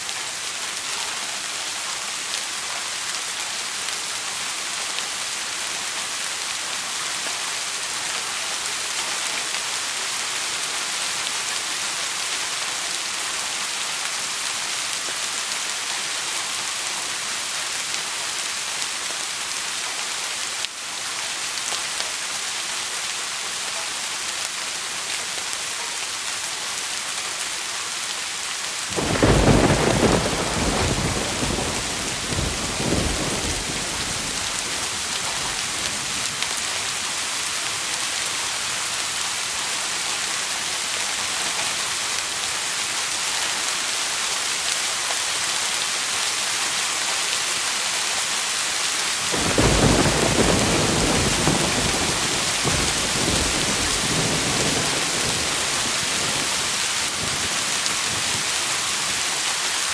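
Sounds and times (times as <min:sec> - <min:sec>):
steady rain falling: 0:00.0 - 0:59.9
low roll of thunder: 0:28.9 - 0:36.3, 0:49.3 - 0:58.5.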